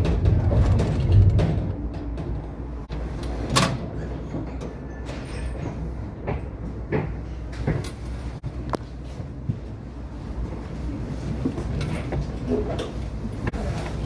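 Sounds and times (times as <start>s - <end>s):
wheel knocks and clunks: 0.0s - 8.0s
tram rumbling on rails: 0.0s - 14.0s.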